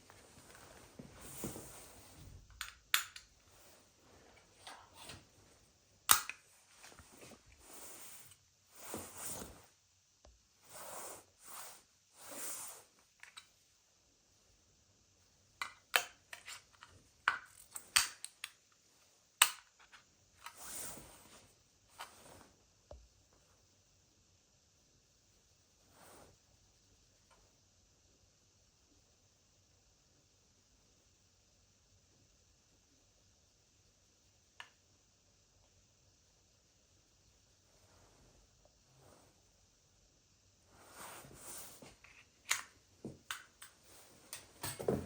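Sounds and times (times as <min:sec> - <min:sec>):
soft rustling: 0:00.0 - 0:02.5, 0:37.6 - 0:39.6, 0:40.6 - 0:45.0.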